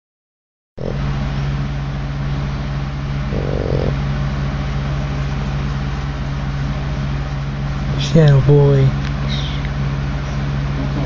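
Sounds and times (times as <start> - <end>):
dog snoring: 0.8 - 1.2, 3.3 - 4.0
low hum: 0.8 - 11.0.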